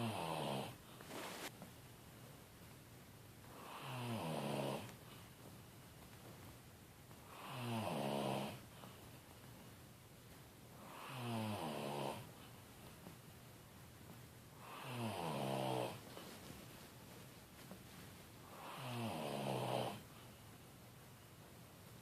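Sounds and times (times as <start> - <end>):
man snoring: 0.0 - 0.8, 3.6 - 4.9, 7.3 - 8.6, 10.9 - 12.2, 14.6 - 16.0, 18.5 - 20.0.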